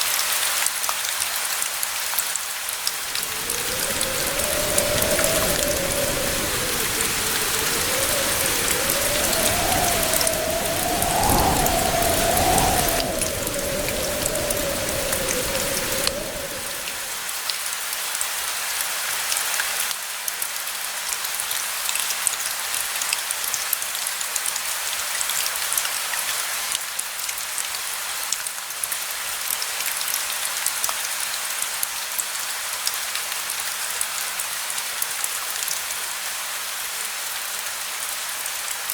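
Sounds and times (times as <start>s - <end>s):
steady rain: 0.0s - 17.8s
distant thunder rumble: 3.0s - 17.2s
wavering tone: 3.0s - 17.2s.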